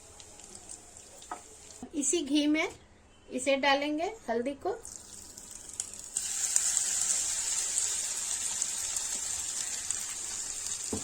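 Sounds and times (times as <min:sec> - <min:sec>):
turmeric sizzling in hot ghee: 0:00.0 - 0:02.0, 0:04.8 - 0:11.0.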